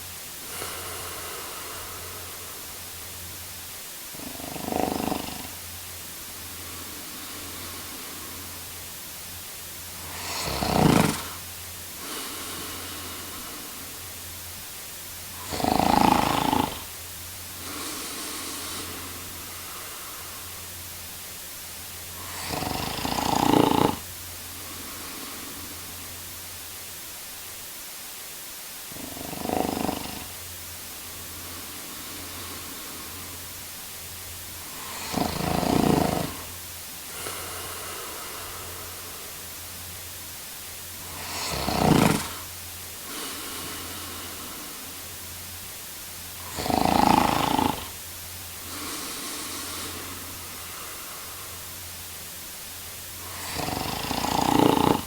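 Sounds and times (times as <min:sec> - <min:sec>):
soft breath: 0:00.0 - 0:03.0, 0:04.1 - 0:09.0, 0:09.9 - 0:20.9, 0:30.1 - 0:39.9, 0:40.9 - 0:45.3, 0:48.6 - 0:55.0
steady background hiss: 0:00.0 - 0:55.0
man snoring: 0:00.4 - 0:03.0, 0:04.1 - 0:08.8, 0:09.9 - 0:14.2, 0:15.3 - 0:20.7, 0:22.1 - 0:26.3, 0:28.9 - 0:33.6, 0:34.5 - 0:39.6, 0:40.9 - 0:45.1, 0:46.3 - 0:48.0, 0:48.6 - 0:51.8, 0:53.1 - 0:55.0.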